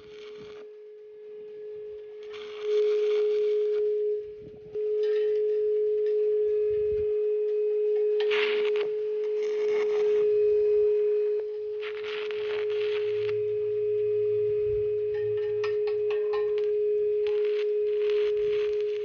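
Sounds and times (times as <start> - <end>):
welding arc crackling and hissing: 0.0 - 0.6, 2.2 - 3.8, 8.2 - 10.2, 11.8 - 13.4, 16.3 - 19.0
steady high humming tone: 0.0 - 19.0.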